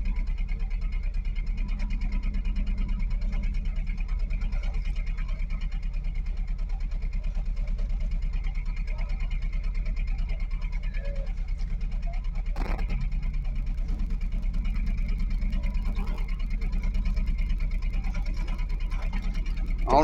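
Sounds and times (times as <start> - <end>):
diesel engine idling: 12.6 - 20.0.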